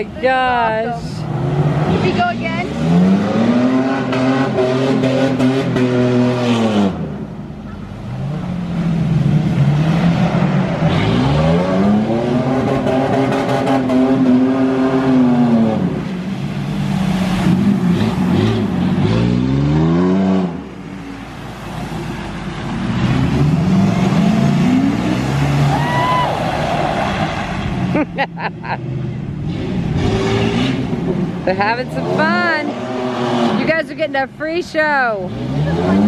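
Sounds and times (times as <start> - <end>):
truck engine revving: 0.0 - 7.3, 8.0 - 36.0.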